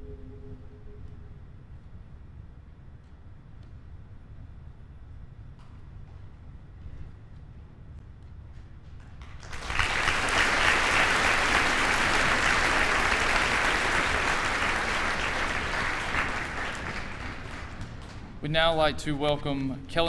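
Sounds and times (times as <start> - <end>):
audience applauding: 9.2 - 18.4.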